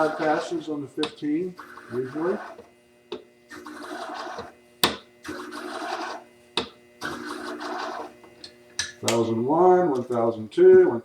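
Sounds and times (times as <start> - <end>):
blade rasping on abrasive pad: 0.0 - 0.6, 1.6 - 8.2
sharpening machine hum: 0.0 - 10.4.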